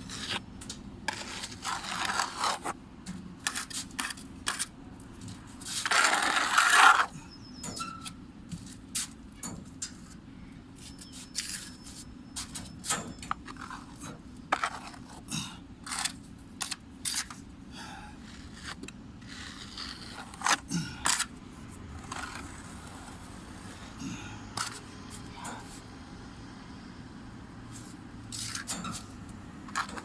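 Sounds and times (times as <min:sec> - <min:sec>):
tool scrapes and clicks: 0:00.0 - 0:00.4, 0:01.1 - 0:02.8.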